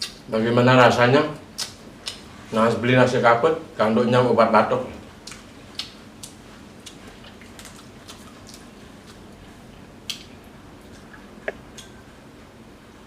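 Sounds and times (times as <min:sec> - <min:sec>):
wet mouth chewing clicks: 0:05.2 - 0:09.3.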